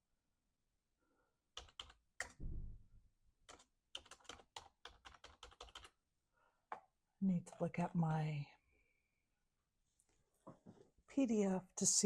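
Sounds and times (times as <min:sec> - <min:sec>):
computer keyboard typing: 0:01.6 - 0:02.4, 0:03.5 - 0:06.0.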